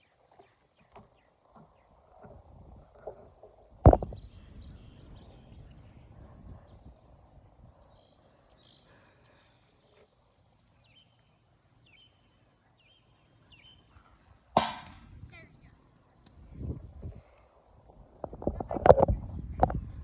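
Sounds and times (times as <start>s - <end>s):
sharp loud knock: 14.6s - 15.0s.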